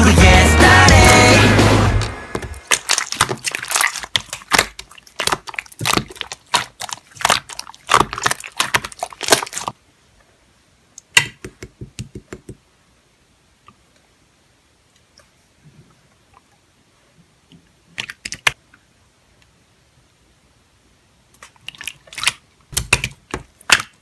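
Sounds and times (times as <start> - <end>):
crackling clicks and pops: 17.5 - 18.8.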